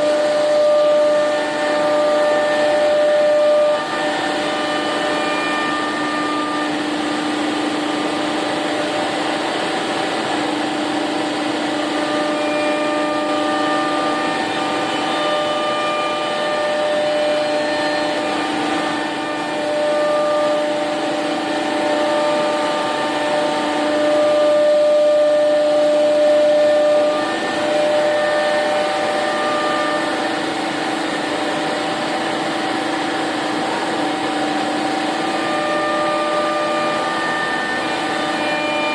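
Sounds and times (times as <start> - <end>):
router spindle whine: 0.0 - 38.9.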